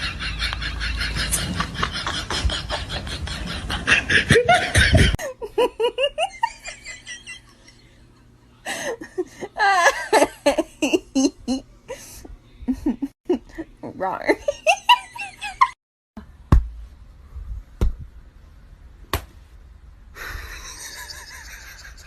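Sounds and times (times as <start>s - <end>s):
people laughing hard: 0.0s - 8.0s, 14.5s - 15.8s.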